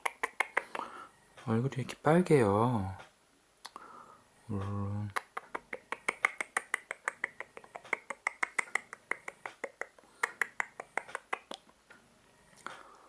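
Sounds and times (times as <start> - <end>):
baby mouth sucking clicks: 0.0 - 0.9, 5.1 - 11.6
person speaking: 4.5 - 11.6.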